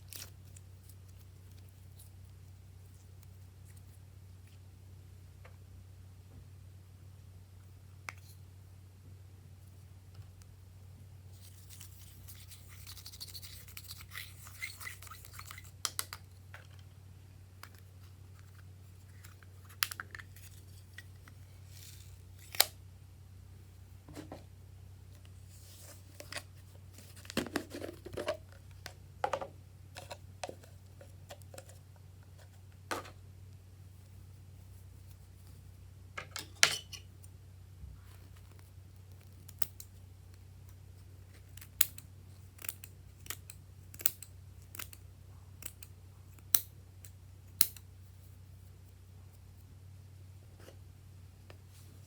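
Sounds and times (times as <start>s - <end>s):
low steady hum: 0.0s - 52.0s
crinkling and scraping: 11.3s - 17.0s, 17.6s - 22.8s, 24.0s - 24.5s, 25.2s - 33.2s.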